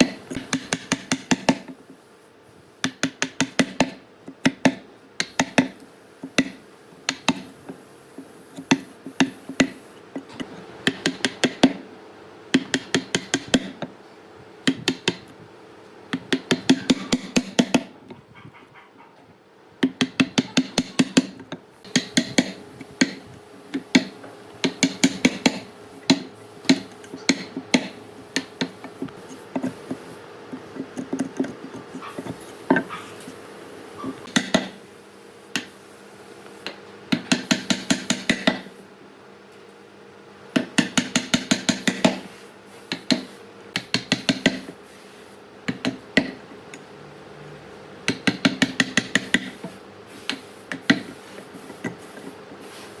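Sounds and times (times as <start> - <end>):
hammering on wood: 0.0 - 1.8, 16.1 - 17.9, 19.8 - 30.0, 34.0 - 34.8, 42.9 - 44.7, 45.7 - 46.4, 48.1 - 49.6
faint steady hum: 0.0 - 53.0.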